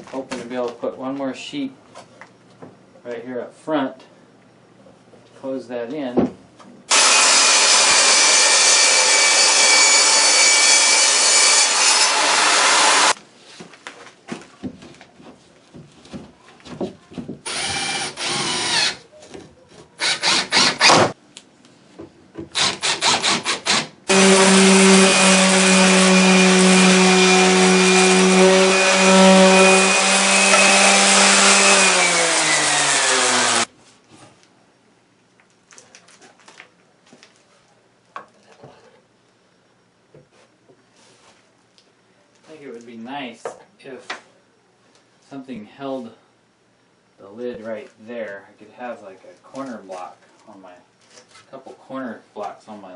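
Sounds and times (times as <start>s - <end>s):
power tool motor on plywood: 6.9s - 13.2s, 17.5s - 19.0s, 24.1s - 33.7s.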